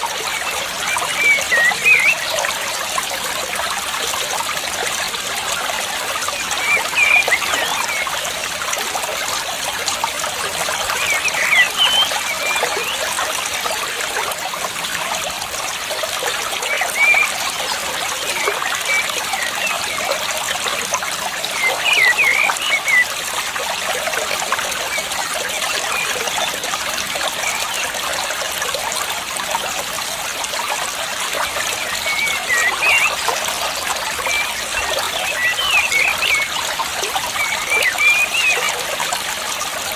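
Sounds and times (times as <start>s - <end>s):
water trickling: 0.0s - 39.9s
high bird chirps: 0.9s - 2.3s, 11.0s - 13.0s, 21.6s - 23.0s, 31.9s - 33.2s, 34.3s - 36.5s.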